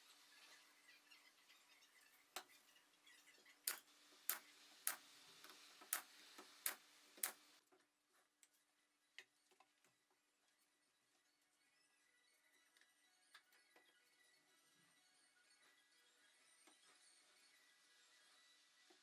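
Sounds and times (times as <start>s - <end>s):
faint steady hiss: 0.0s - 8.2s.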